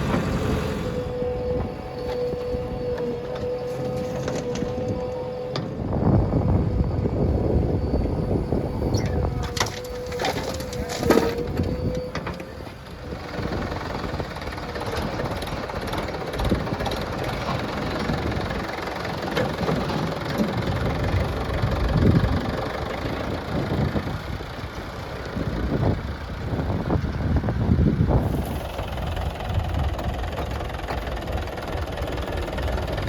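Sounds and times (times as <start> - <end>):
diesel engines running: 0.0 - 33.0
steady whine: 0.0 - 33.0.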